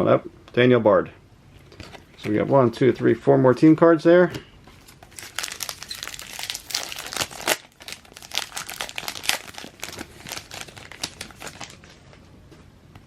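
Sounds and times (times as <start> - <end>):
foil wrapper crinkling: 4.8 - 12.2.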